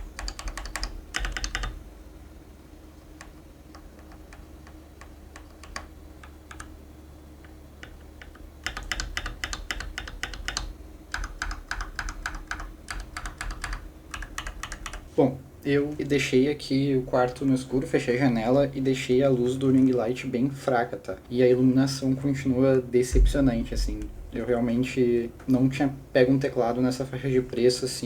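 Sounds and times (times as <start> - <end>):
mechanical keyboard typing: 0.0 - 1.8, 3.2 - 6.8, 7.8 - 15.1.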